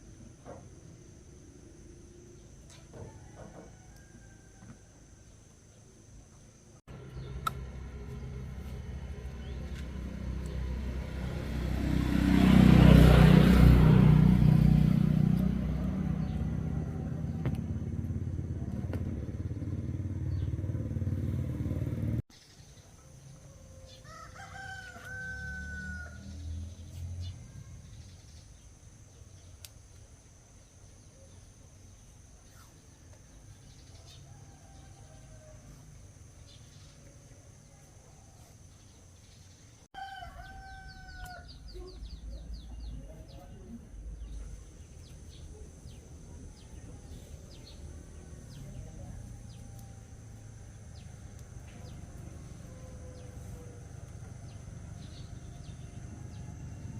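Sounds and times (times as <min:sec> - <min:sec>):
rooster crowing: 0:02.9 - 0:05.3, 0:23.3 - 0:26.6, 0:34.0 - 0:36.0, 0:40.0 - 0:42.8, 0:51.7 - 0:56.9.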